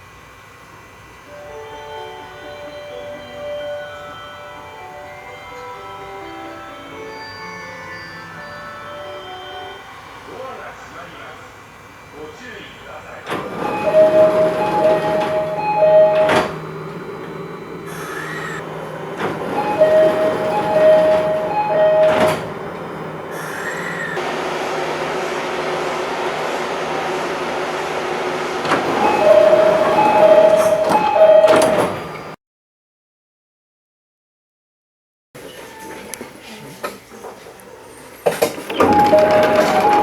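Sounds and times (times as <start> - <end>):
standing train hum: 0.0 - 32.3
sliding doors shutting knock: 13.2 - 32.4, 38.3 - 40.0
two-note door chime: 13.5 - 17.8, 19.2 - 23.2, 28.6 - 32.2, 38.8 - 40.0.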